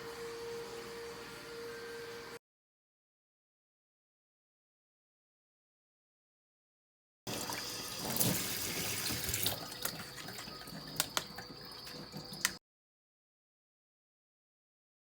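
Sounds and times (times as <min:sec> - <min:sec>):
tap water running into sink: 0:07.3 - 0:12.6.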